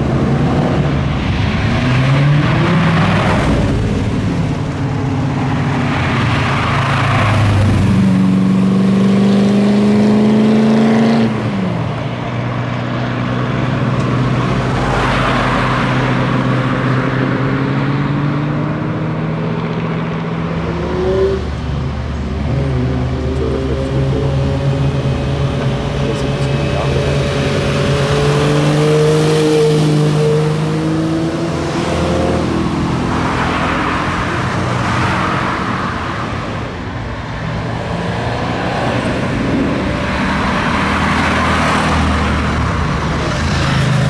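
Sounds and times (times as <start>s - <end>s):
car engines running: 0.0s - 44.0s.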